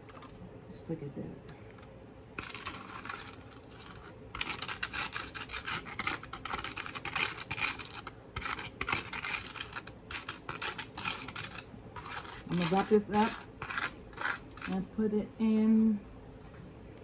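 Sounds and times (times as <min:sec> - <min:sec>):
kitchen wrap crinkling: 0:02.4 - 0:14.8.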